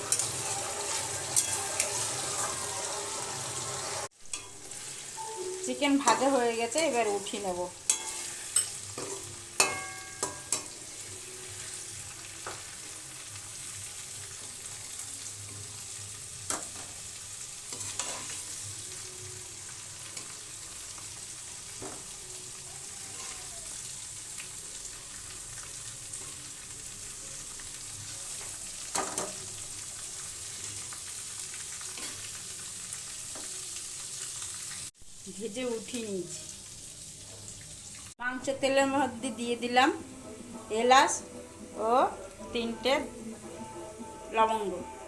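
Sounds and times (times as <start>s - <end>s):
chicken sizzling in hot oil: 0.0s - 42.4s.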